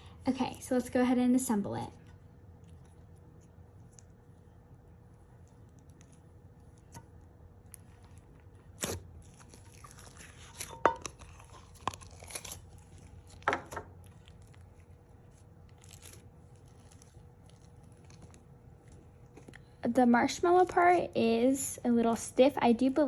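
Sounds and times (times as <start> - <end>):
slime crackling and tearing: 5.0 - 19.8.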